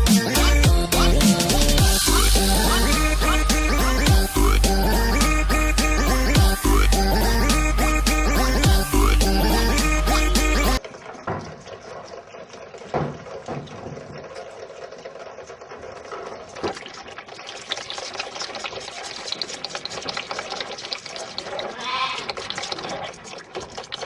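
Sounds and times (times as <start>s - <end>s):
knocks: 11.2s - 11.7s, 12.8s - 14.3s
young animal bleating: 21.7s - 22.4s.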